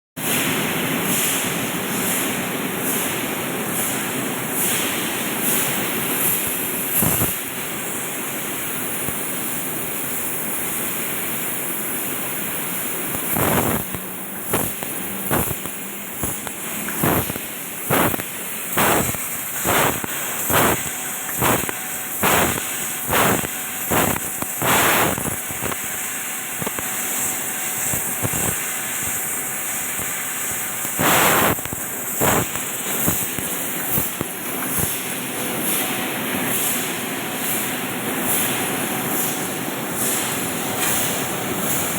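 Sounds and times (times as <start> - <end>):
laser cutter hissing: 3.8 - 10.8, 11.4 - 35.8
short sharp pops: 13.2 - 25.8.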